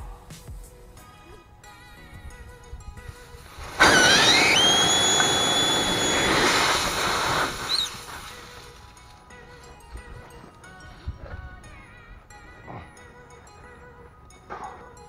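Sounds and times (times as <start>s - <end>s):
air hissing from tire: 3.6s - 8.7s.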